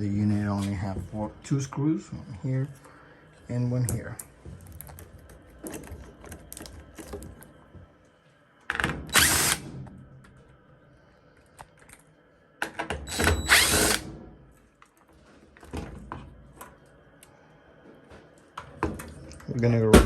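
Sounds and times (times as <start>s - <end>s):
power drill driver running: 9.1s - 9.6s, 13.1s - 14.0s.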